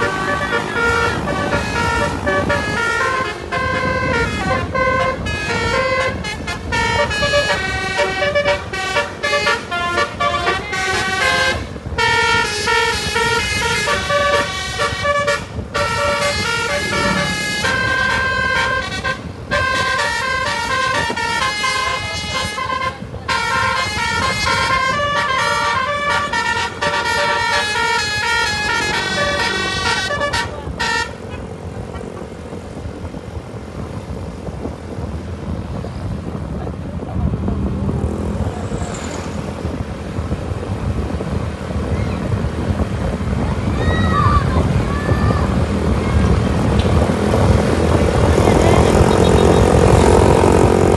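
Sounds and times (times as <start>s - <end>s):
multi-tone bus horn melody: 0.0s - 32.9s, 45.6s - 50.9s
engine and road noise: 0.0s - 50.9s.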